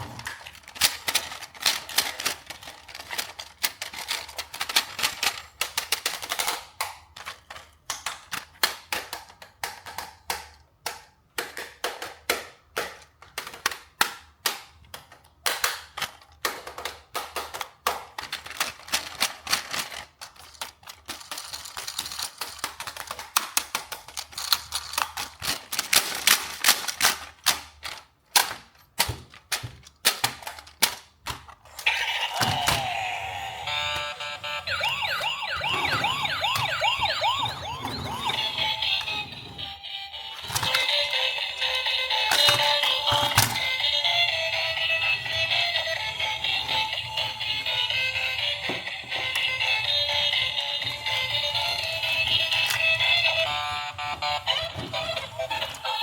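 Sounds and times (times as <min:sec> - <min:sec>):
plastic toy parts clicking: 0:00.0 - 0:32.9, 0:40.3 - 0:48.0, 0:48.6 - 0:56.0
toy electronic siren: 0:31.8 - 0:56.0
electronic effect tones: 0:31.9 - 0:39.3.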